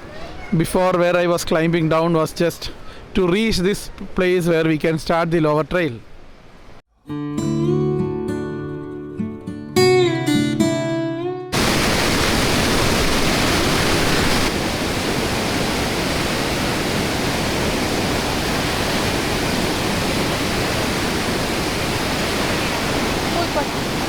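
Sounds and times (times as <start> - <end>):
acoustic guitar music: 6.9 - 11.6
waterfall roaring: 11.6 - 24.0.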